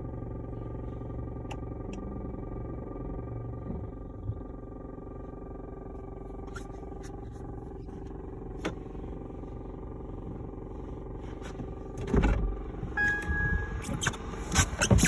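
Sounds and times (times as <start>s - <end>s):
car droning hum: 0.0s - 15.0s
brief high beep: 13.0s - 13.9s.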